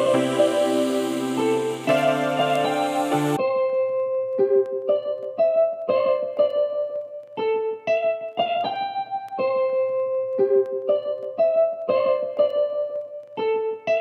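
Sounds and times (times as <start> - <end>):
piano music: 0.0 - 3.4.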